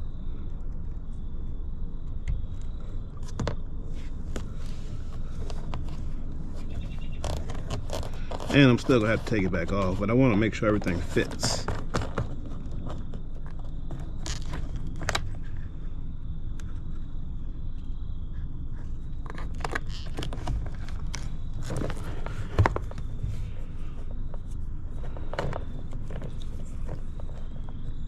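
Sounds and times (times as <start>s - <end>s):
faint steady high tone: 0.0s - 28.0s.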